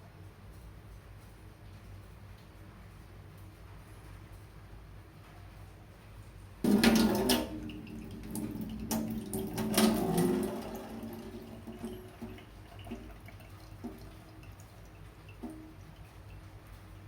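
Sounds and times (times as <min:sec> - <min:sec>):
tap water running into sink: 0:06.6 - 0:16.8.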